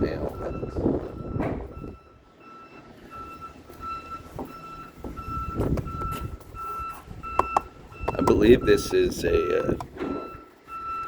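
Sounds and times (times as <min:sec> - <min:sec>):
loud thud: 0:01.4 - 0:01.7.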